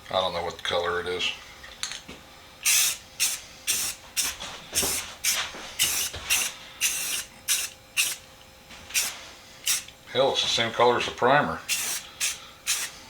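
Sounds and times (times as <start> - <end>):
spray paint can hissing: 2.7 - 8.2, 8.9 - 9.1, 11.7 - 13.0.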